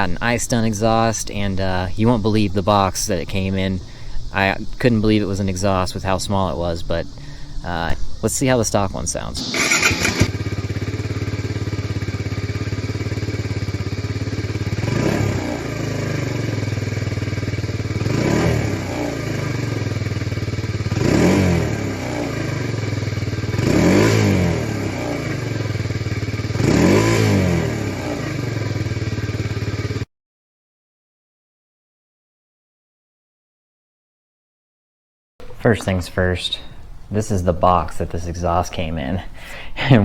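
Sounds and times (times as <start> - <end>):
motorcycle engine idling and revving: 9.4 - 30.1.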